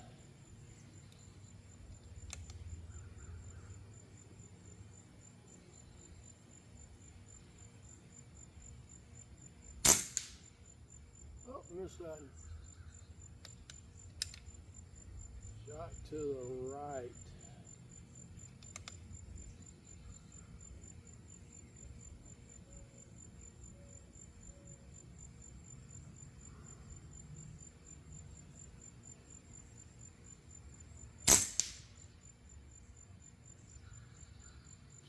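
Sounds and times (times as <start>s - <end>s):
insect chirring: 0.0s - 35.0s
rifle shot: 9.8s - 10.4s, 31.3s - 31.9s.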